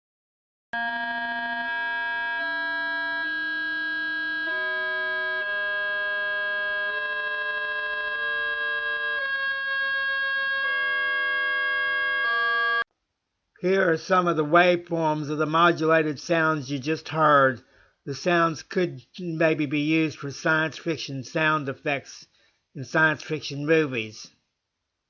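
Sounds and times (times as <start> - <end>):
synthesized electronic tone: 0.8 - 12.8.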